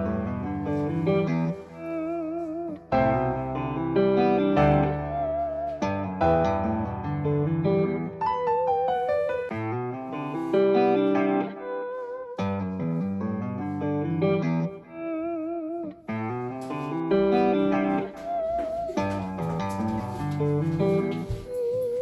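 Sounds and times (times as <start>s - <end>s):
plucked string melody: 0.0s - 22.0s.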